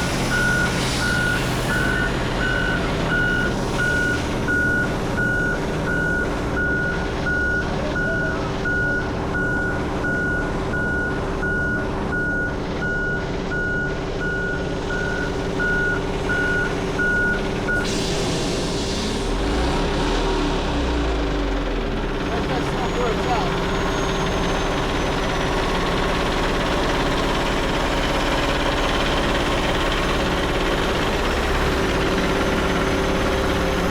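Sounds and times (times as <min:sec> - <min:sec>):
truck engine running: 0:00.0 - 0:33.9
backup alarm beeping: 0:00.3 - 0:17.9.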